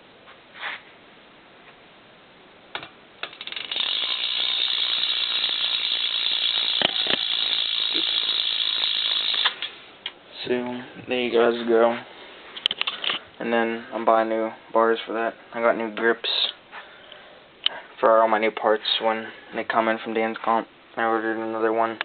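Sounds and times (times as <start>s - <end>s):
bicycle hub ratcheting buzz: 3.2s - 9.8s.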